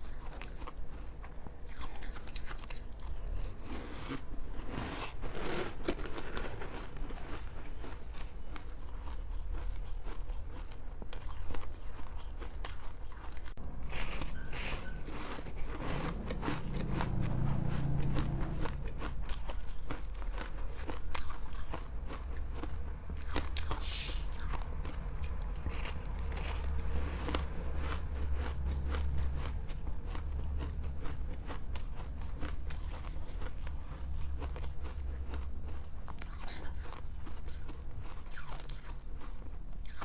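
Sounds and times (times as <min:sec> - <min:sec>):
ice being bitten and crunched: 0:03.4 - 0:13.4.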